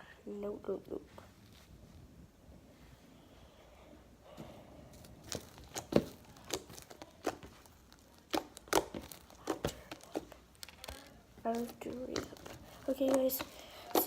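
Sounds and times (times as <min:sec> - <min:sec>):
slime tearing and crinkling: 0:05.0 - 0:14.0
slime clicking and popping: 0:05.3 - 0:14.0.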